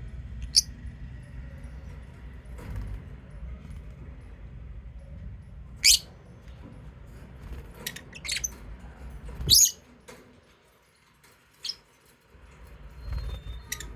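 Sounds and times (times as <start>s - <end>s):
low rumble: 0.0s - 7.8s
lovebirds shrill chirps: 5.8s - 6.1s, 7.9s - 8.5s, 9.5s - 9.8s, 13.0s - 13.9s.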